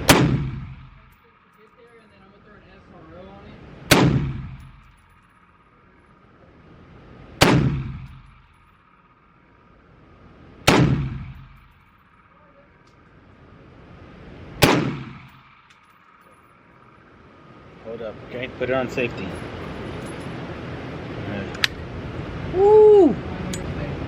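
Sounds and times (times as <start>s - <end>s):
rifle shots echoing indoors: 0.0s - 1.2s, 3.9s - 5.3s, 7.4s - 8.9s, 10.6s - 12.3s, 14.6s - 16.2s.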